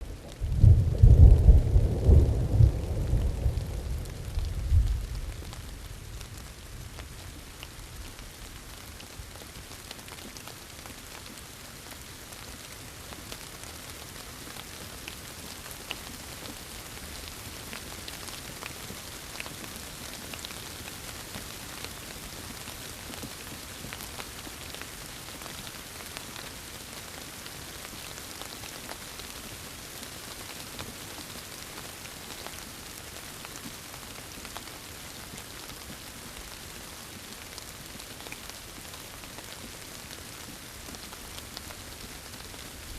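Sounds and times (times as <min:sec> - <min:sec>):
rain on a hard surface: 0:00.0 - 0:42.9
thunder rumble: 0:00.3 - 0:06.5.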